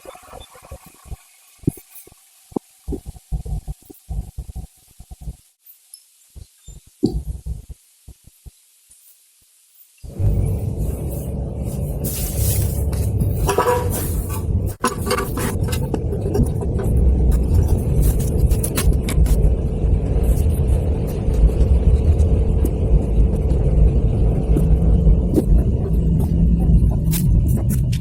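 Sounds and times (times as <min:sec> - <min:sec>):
engine low rumble: 0:10.1 - 0:28.0.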